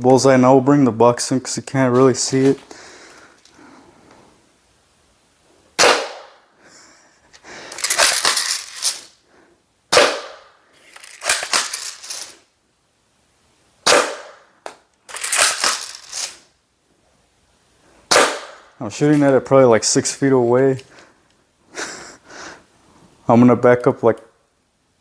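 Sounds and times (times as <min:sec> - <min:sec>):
airsoft shotgun firing: 0:05.8 - 0:06.4, 0:09.9 - 0:10.4, 0:13.8 - 0:14.4, 0:18.1 - 0:18.6
shotgun pump rattling: 0:07.7 - 0:09.1, 0:10.9 - 0:12.4, 0:15.1 - 0:16.4.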